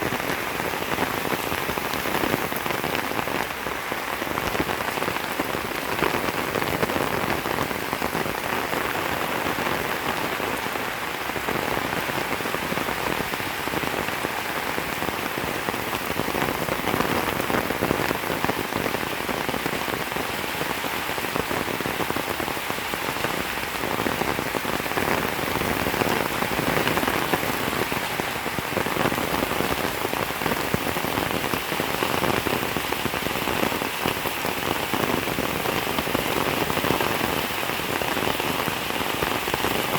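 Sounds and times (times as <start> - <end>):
heavy rain pattering: 0.0 - 39.9.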